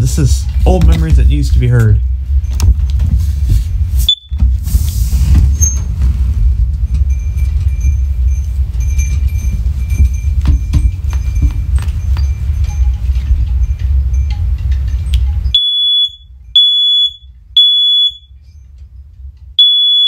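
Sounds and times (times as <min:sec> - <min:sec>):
loud low rumble: 0:00.0 - 0:15.6
smoke alarm beeping: 0:04.0 - 0:04.4, 0:15.3 - 0:18.6, 0:19.6 - 0:20.0.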